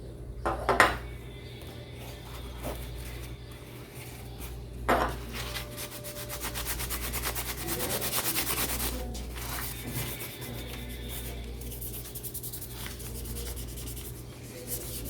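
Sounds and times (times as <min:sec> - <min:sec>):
cotton rubbing over circuit board: 0:05.6 - 0:15.0.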